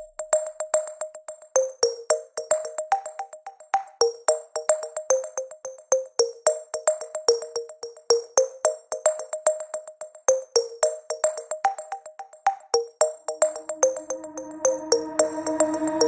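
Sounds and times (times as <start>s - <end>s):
bell-like pings: 13.3s - 16.0s
electronic synth music: 13.5s - 16.0s.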